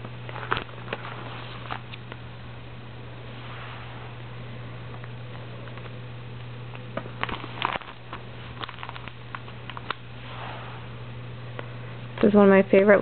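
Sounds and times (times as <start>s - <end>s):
binder pages clicking and crinkling: 0.0s - 2.2s, 4.9s - 6.0s, 6.7s - 10.0s
steady low hum: 0.0s - 13.0s
page swishing: 0.3s - 2.0s.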